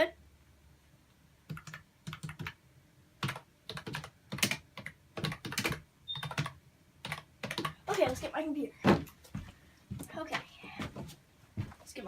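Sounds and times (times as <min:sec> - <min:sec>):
keyboard keys clicking: 0:03.2 - 0:07.8.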